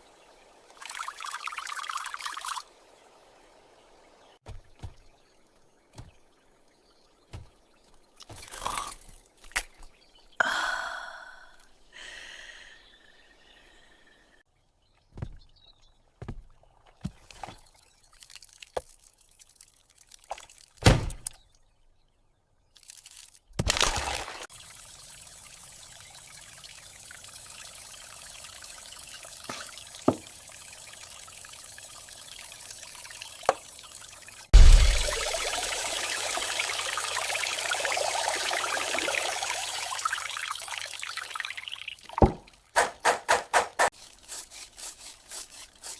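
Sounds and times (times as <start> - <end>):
liquid trickling: 0.0 - 3.2, 4.2 - 10.2, 17.0 - 20.8, 22.8 - 42.8, 43.9 - 45.9
crunching scrape: 43.9 - 45.9.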